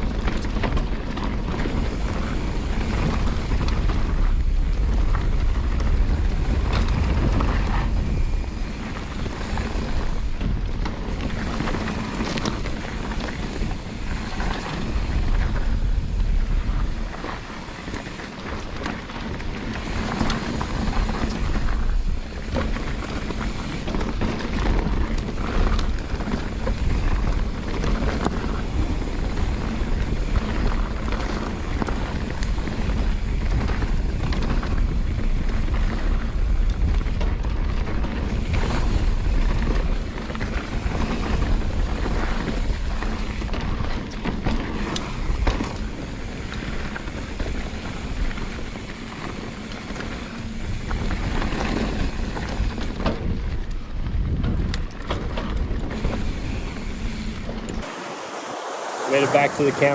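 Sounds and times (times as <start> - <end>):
knocks and rattles from trail: 0.0 - 58.5
wind buffeting microphone: 0.0 - 59.9.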